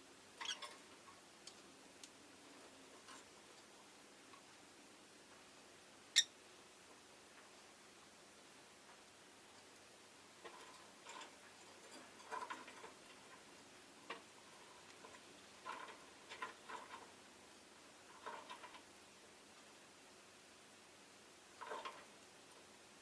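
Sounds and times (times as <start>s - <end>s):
bird moving with small ticks: 8.8s - 17.3s, 17.9s - 19.0s, 21.6s - 22.7s.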